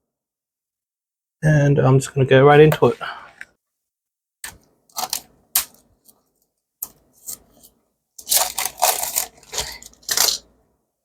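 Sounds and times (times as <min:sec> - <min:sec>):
packaging tearing and crinkling: 0:04.9 - 0:05.8, 0:07.3 - 0:10.4
packaging clicks: 0:08.2 - 0:10.4.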